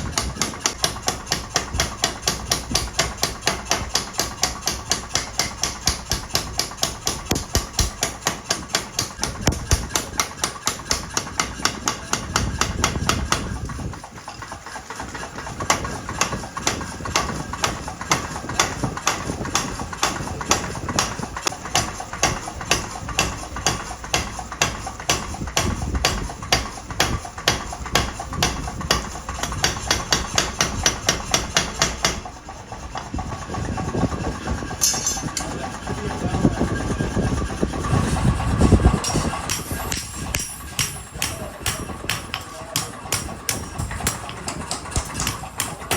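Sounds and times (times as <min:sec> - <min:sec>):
hammer striking steel: 0:00.0 - 0:13.6, 0:15.7 - 0:32.4, 0:34.8 - 0:35.7, 0:39.0 - 0:45.9.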